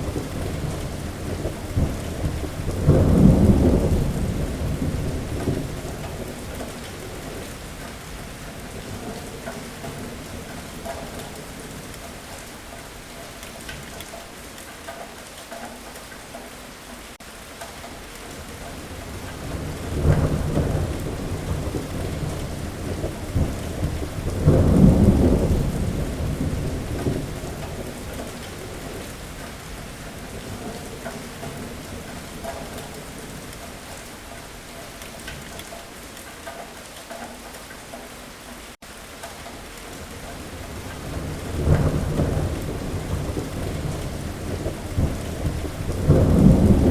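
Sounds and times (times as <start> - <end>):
rolling thunder: 0.0 - 12.4, 18.4 - 33.9, 40.0 - 46.9
steady rain: 0.0 - 46.9.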